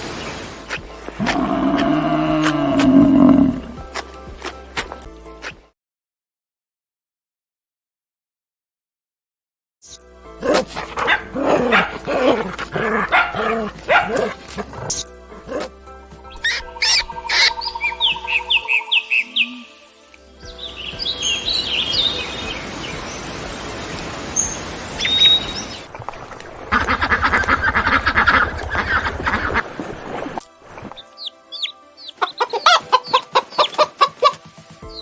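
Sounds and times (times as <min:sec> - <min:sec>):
high bird chirping: 0:16.3 - 0:19.8, 0:20.4 - 0:23.2, 0:24.4 - 0:25.9, 0:31.0 - 0:34.0
chicken clucking: 0:32.0 - 0:34.5.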